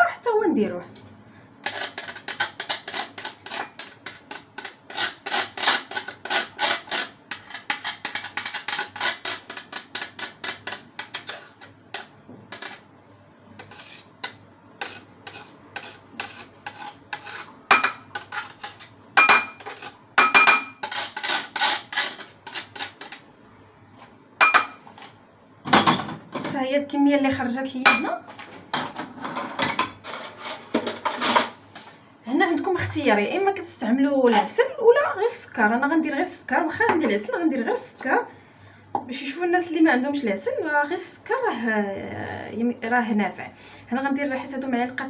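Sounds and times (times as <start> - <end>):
vegetable rasping on metal grater: 1.7 - 12.8, 13.6 - 17.5, 18.1 - 18.9, 19.6 - 20.0, 20.8 - 23.2, 30.0 - 31.5.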